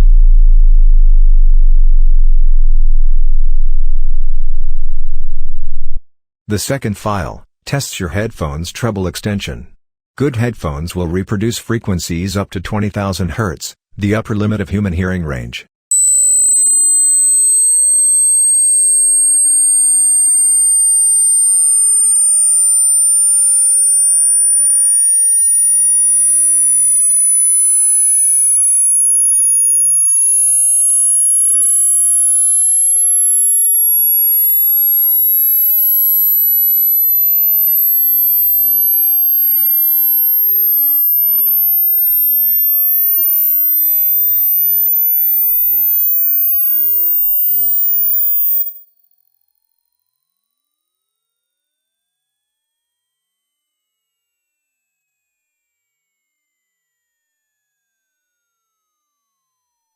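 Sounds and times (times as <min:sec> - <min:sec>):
high sine-wave tone sweeping up: 0:00.0 - 0:06.0, 0:15.9 - 0:48.8.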